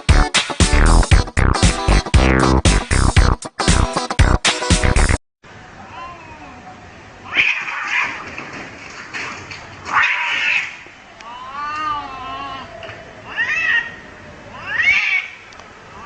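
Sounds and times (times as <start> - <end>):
cat meowing: 11.4 - 15.4.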